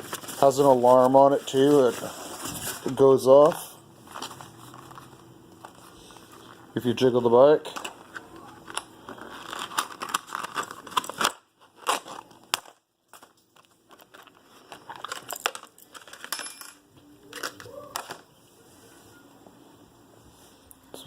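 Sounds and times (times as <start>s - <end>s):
packaging rustling: 0.0s - 6.7s, 7.6s - 16.3s.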